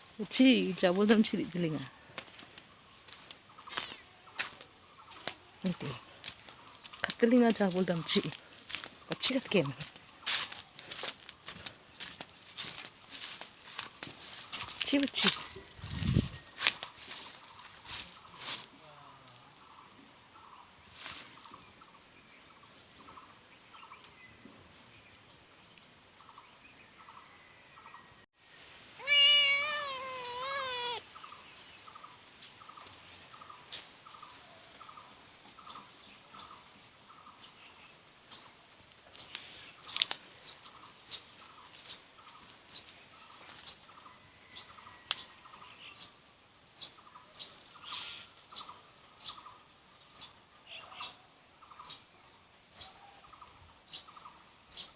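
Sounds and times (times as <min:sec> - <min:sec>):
cat meowing: 0:29.0 - 0:31.0
faint short calls: 0:29.0 - 0:31.0.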